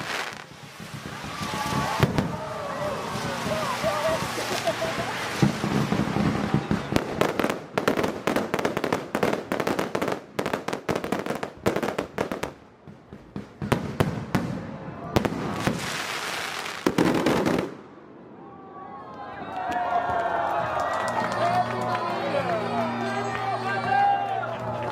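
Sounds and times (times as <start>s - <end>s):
fireworks bangs and crackles: 0.0s - 18.3s.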